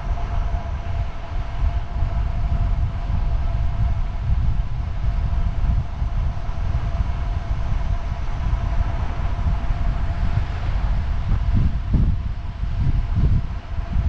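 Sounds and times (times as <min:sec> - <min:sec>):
faint high whine: 0:00.0 - 0:14.0
wind rumble on microphone: 0:00.0 - 0:14.0.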